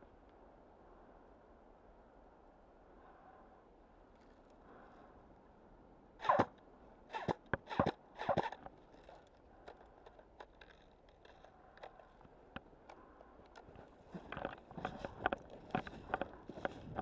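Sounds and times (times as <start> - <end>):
footsteps crunching through undergrowth: 13.7 - 17.0.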